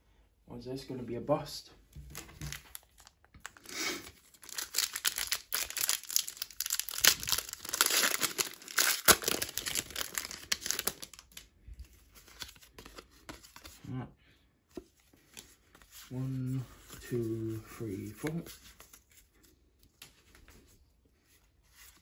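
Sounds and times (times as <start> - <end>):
foil wrapper crinkling: 2.1 - 11.5.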